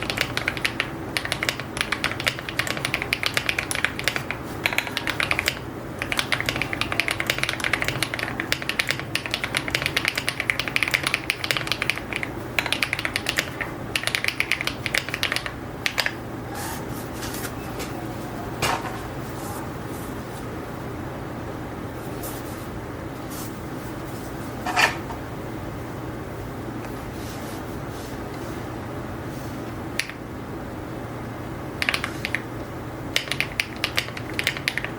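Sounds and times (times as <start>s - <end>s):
fast typing on mechanical keyboard: 0.0s - 16.2s, 31.8s - 32.5s, 33.1s - 34.9s.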